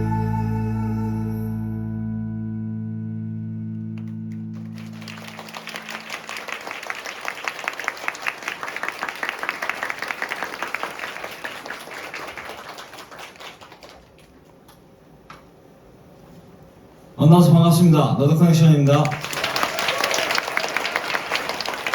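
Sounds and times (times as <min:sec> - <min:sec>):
audience applause: 0:04.0 - 0:14.5, 0:18.8 - 0:21.9.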